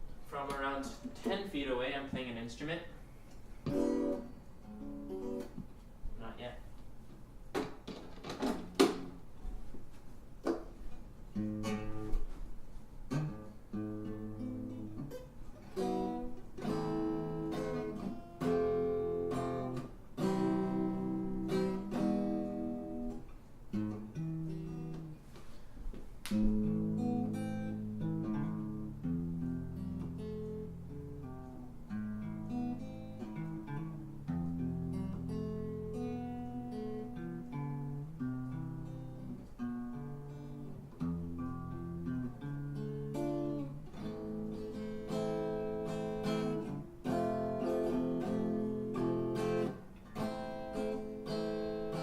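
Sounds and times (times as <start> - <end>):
person talking: 0.2 - 3.0, 6.2 - 6.7
acoustic guitar strumming: 3.6 - 5.7, 11.3 - 25.2, 26.3 - 52.0.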